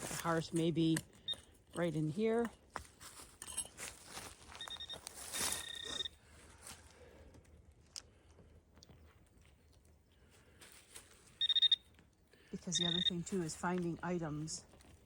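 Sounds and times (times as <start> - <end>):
metal detector beeps: 0.0 - 2.5, 4.5 - 6.2, 11.4 - 11.9, 12.6 - 14.6.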